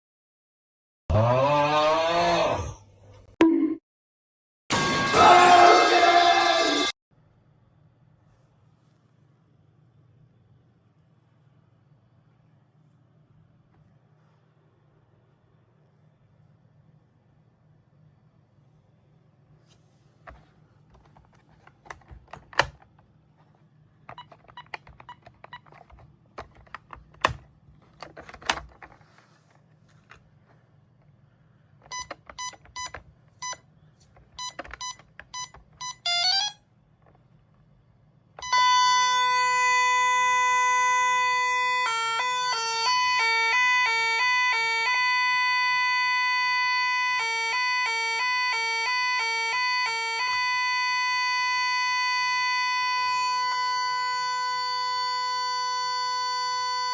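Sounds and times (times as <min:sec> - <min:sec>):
alarm panel clicks: 0:21.6 - 0:22.9, 0:24.1 - 0:28.9, 0:34.4 - 0:36.5
intruder alarm tone and warble: 0:38.4 - 0:56.9.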